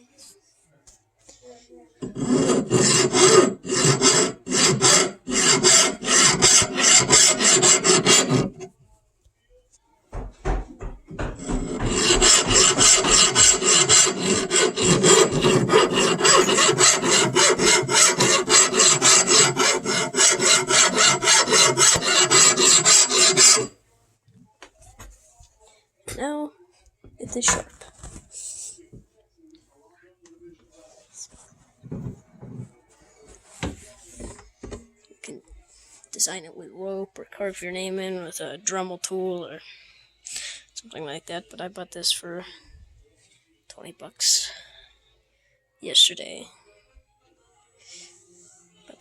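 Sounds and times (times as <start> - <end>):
file rasping on metal: 2.0 - 8.7, 11.1 - 23.7.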